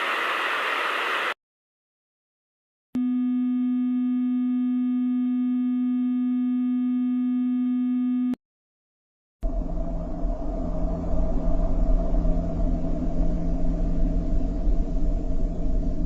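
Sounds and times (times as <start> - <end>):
steady low tone: 9.4 - 16.0.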